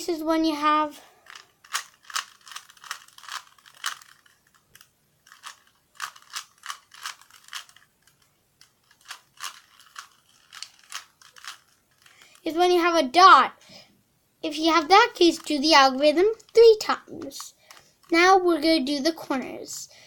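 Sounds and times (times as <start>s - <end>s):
puzzle cube clicking: 1.2s - 12.4s, 15.0s - 18.1s.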